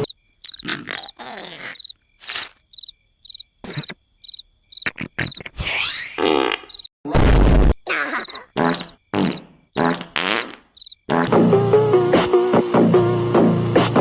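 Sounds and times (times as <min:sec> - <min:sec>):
cricket chirps: 0:00.0 - 0:06.9, 0:07.8 - 0:11.3.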